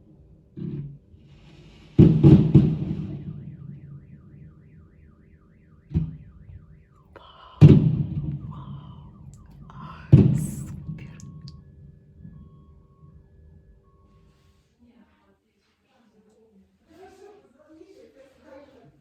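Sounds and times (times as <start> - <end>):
fireworks booming: 1.8 - 11.5.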